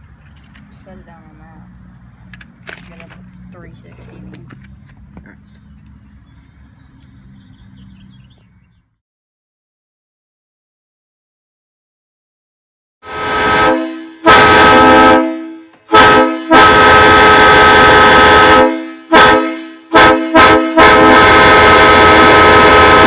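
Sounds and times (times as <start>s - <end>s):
chime train horn blasts: 13.0s - 23.0s.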